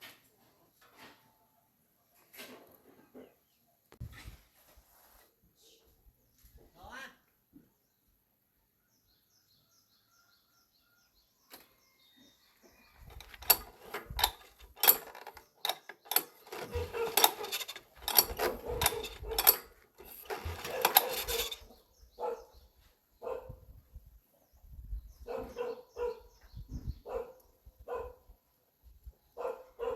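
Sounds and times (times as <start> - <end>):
metal tools clicking and knocking: 13.0 - 21.7.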